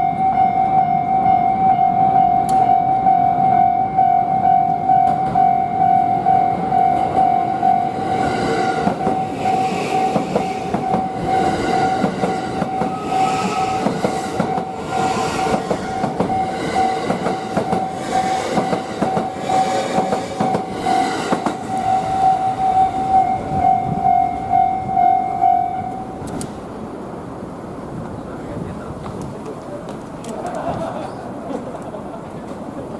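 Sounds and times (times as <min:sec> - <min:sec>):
level crossing alarm ringing: 0:00.0 - 0:26.2
train passing: 0:00.0 - 0:32.9
train wheels clacking on rails: 0:06.9 - 0:24.6.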